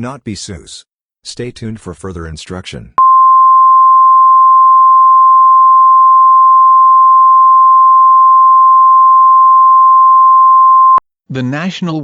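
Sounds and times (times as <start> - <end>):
single-pitch electronic alarm tone: 3.0 - 11.0.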